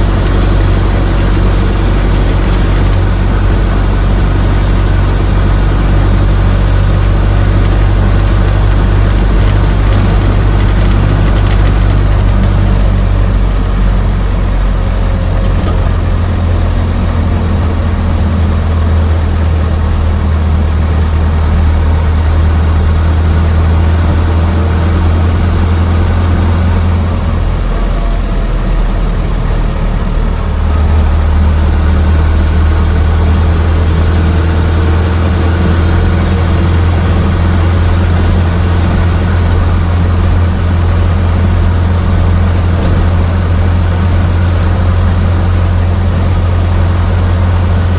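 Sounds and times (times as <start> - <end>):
car engine running: 0.0 - 47.9.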